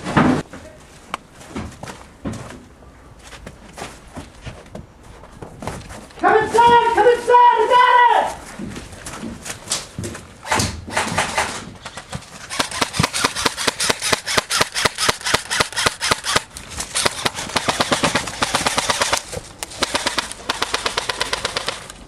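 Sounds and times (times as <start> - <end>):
airsoft guns firing: 12.4 - 21.9.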